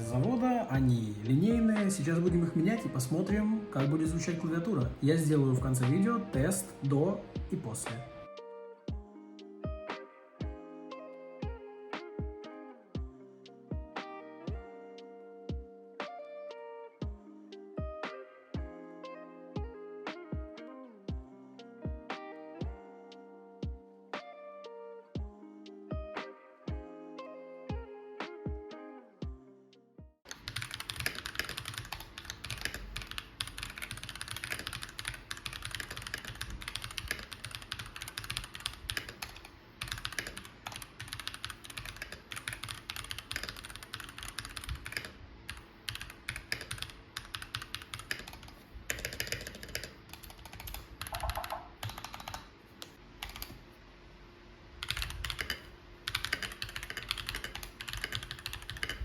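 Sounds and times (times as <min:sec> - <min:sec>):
mechanical keyboard typing: 0:30.3 - 0:53.6, 0:54.8 - 0:59.0.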